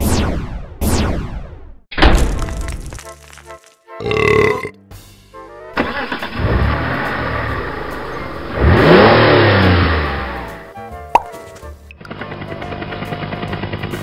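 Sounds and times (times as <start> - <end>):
loud burp: 4.0 - 4.8
car engine revving: 5.8 - 10.7.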